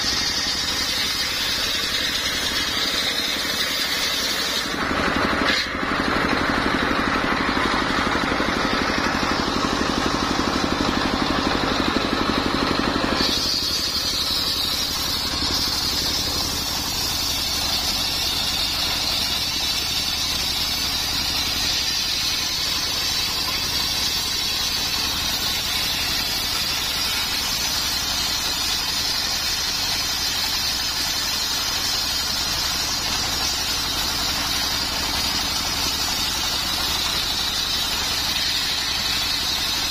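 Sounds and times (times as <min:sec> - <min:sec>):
car engine running: 0:04.5 - 0:29.8.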